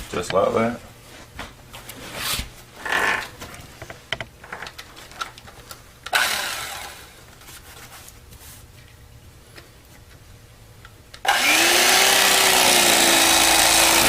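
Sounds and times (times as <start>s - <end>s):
foam being cut rasping: 11.3s - 14.0s.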